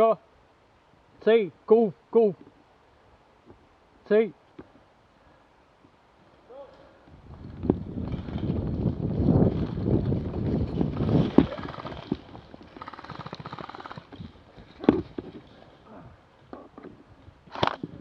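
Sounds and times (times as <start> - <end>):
rustling and knocking: 7.5 - 15.6.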